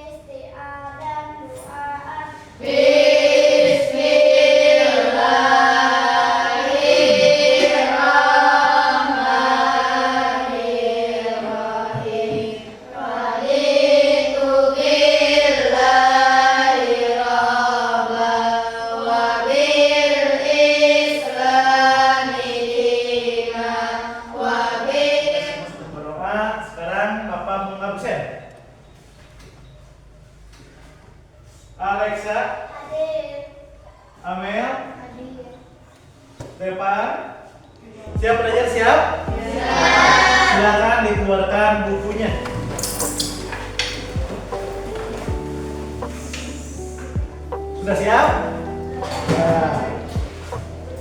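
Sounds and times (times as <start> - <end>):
children singing in unison: 2.4 - 25.9, 38.5 - 51.0.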